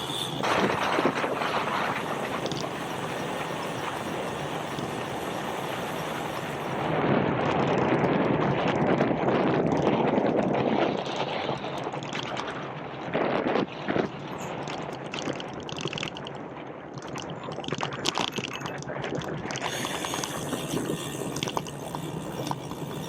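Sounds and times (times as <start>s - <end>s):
road noise: 0.0s - 7.3s
wind rushing over microphone: 0.0s - 23.0s.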